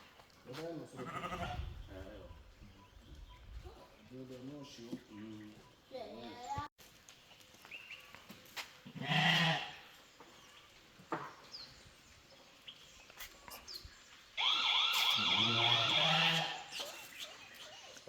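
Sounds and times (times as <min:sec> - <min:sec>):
sheep bleating: 0:01.0 - 0:01.7, 0:09.0 - 0:09.8, 0:14.4 - 0:16.8.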